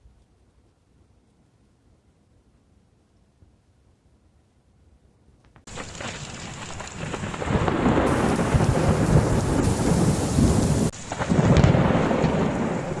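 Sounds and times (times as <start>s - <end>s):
strong wind buffeting microphone: 8.0s - 10.9s.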